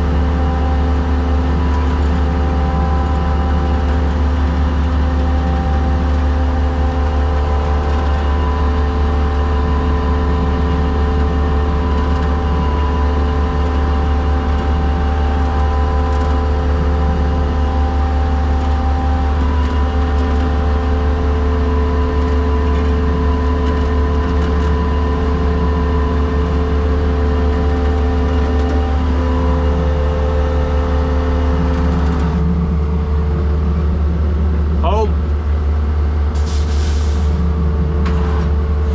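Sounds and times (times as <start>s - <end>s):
skid steer engine running: 0.0s - 38.9s.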